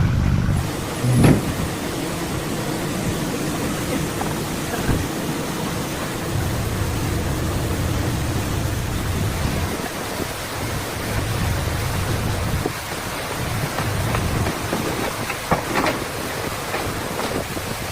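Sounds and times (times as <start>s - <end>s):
heavy diesel machinery rumbling: 0.0s - 17.9s
steady rushing noise: 0.0s - 17.9s.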